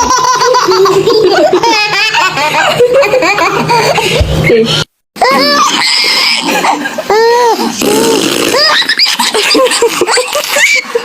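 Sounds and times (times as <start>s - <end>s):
baby laughing and squealing: 5.2s - 11.0s.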